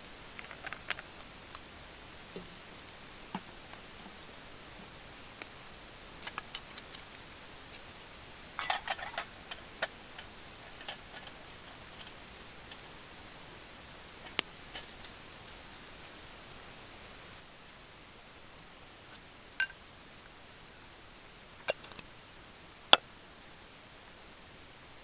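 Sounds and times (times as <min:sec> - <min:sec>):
fire steady hiss: 0:00.0 - 0:25.0
wood fire crackling and popping: 0:00.2 - 0:15.8.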